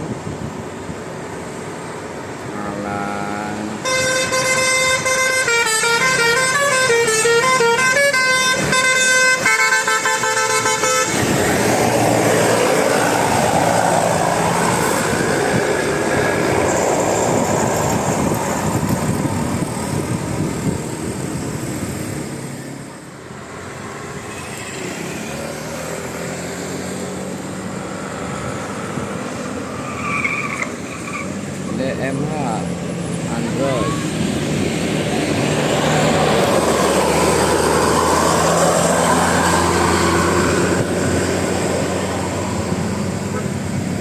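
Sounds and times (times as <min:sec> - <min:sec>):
bus driving past: 0:00.0 - 0:44.0
musical air horn tune: 0:03.8 - 0:11.3.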